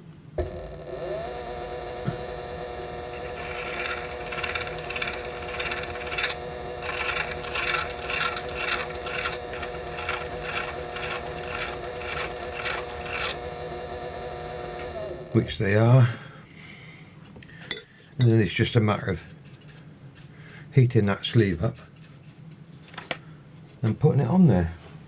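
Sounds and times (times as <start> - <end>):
lathe motor running: 0.4 - 15.7
hand file scraping metal: 2.0 - 13.6.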